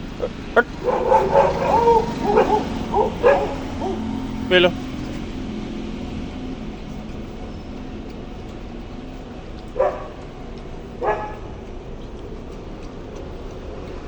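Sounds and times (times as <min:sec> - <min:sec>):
dog barking: 0:00.7 - 0:04.1, 0:09.8 - 0:10.2, 0:11.0 - 0:11.6.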